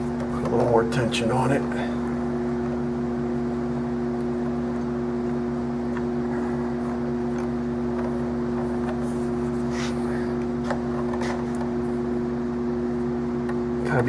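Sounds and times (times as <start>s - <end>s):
steady machine hum: 0.0s - 14.0s.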